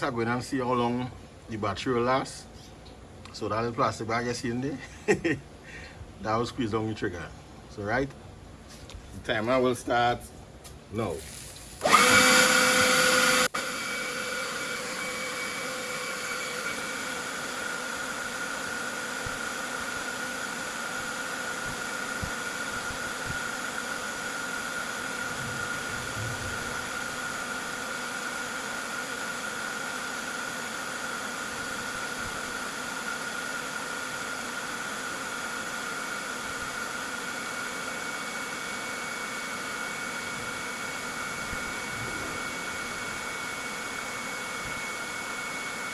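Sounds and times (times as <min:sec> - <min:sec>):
leaf blower running: 0:11.0 - 0:45.9.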